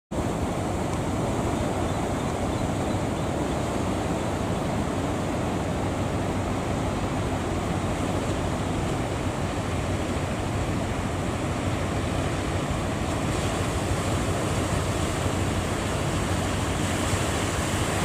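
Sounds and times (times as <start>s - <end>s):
surf breaking: 5.0s - 18.0s.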